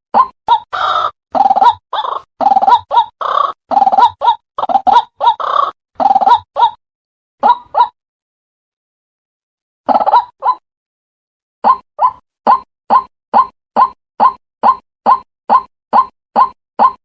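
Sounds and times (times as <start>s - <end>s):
bird calling with harsh croaks: 0.2s - 6.8s.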